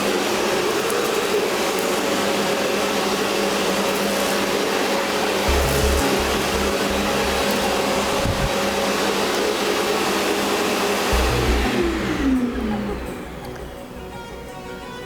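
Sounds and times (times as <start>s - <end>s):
vacuum cleaner running: 0.0s - 15.0s.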